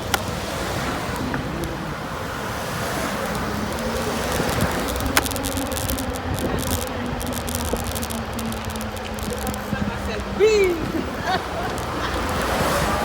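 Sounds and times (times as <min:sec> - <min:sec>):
electric bike motor whining: 0:00.0 - 0:13.0
wind and road noise: 0:00.0 - 0:13.0
rattling clicks: 0:03.2 - 0:10.2.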